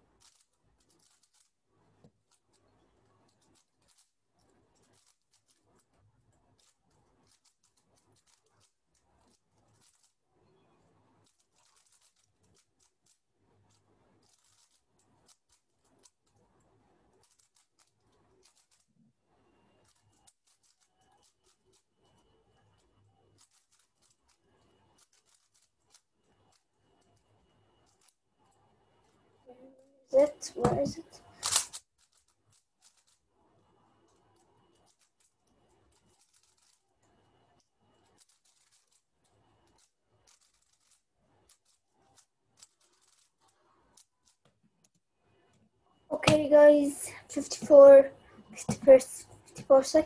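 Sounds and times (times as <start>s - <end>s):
plastic puzzle cube clicking: 0.2s - 1.5s, 3.2s - 5.8s, 6.6s - 10.1s, 11.2s - 16.4s, 17.1s - 18.9s, 19.8s - 21.9s, 22.8s - 27.2s, 30.6s - 33.2s, 35.9s - 36.8s, 38.0s - 44.5s.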